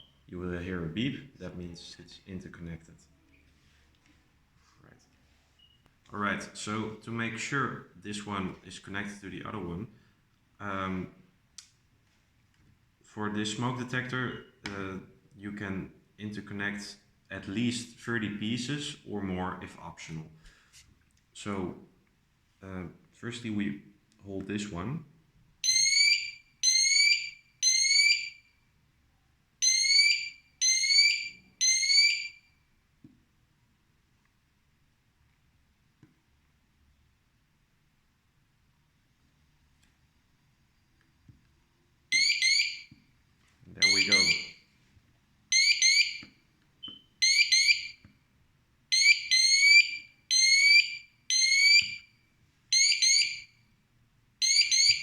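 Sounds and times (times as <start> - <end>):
smoke alarm beeping: 0.0 - 0.3, 25.6 - 28.6, 29.6 - 32.7, 42.1 - 43.0, 43.8 - 44.7, 45.5 - 48.0, 48.9 - 53.6, 54.4 - 55.0.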